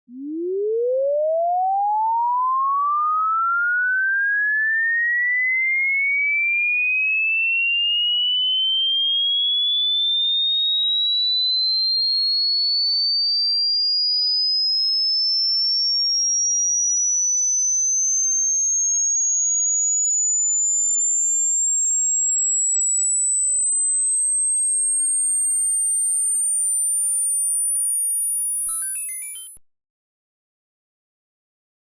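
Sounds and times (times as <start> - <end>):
rising high-pitched sine tone: 0.1 - 6.2, 7.5 - 11.8, 14.8 - 29.6.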